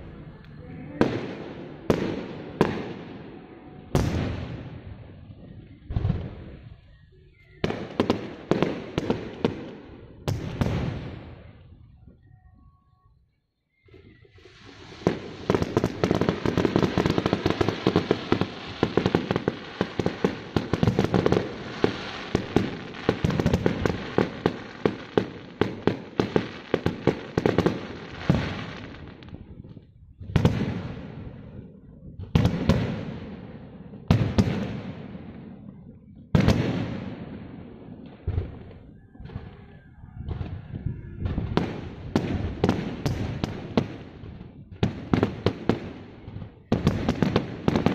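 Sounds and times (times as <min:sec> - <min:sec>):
fireworks bangs and crackling: 0:00.0 - 0:11.9, 0:14.0 - 0:47.9
fireworks popping: 0:14.4 - 0:31.2, 0:41.2 - 0:47.9.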